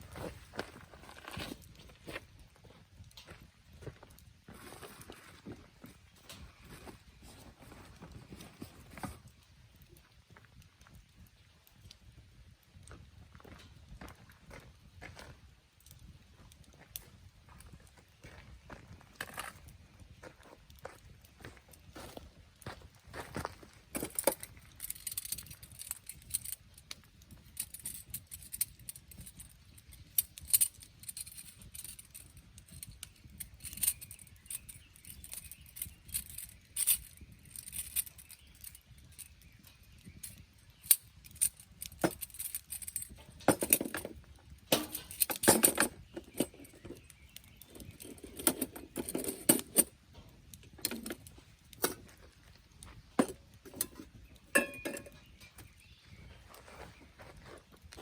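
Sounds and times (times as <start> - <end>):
things being handled: 4.5 - 9.4, 23.8 - 58.0
scraping: 40.9 - 55.7.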